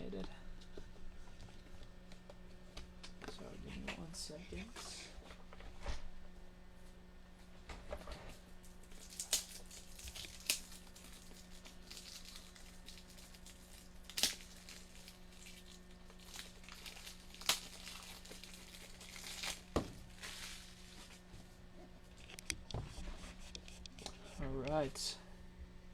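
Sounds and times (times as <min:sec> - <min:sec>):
plastic packaging crinkling and tearing: 0:08.5 - 0:21.3.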